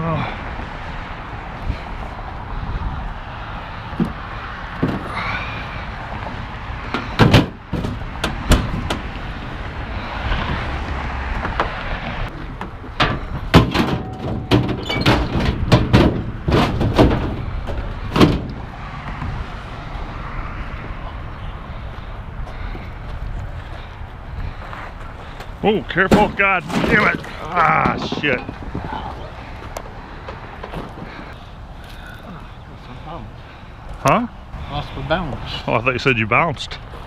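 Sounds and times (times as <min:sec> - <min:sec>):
background rumble: 0:03.9 - 0:34.6
heavy equipment clunking: 0:12.4 - 0:19.3, 0:25.9 - 0:31.4.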